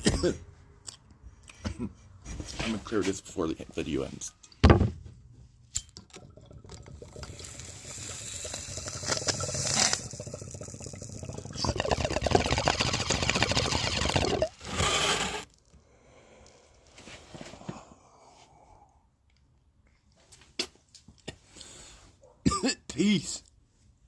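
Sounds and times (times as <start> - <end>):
water pipe bubbling: 5.8 - 14.8.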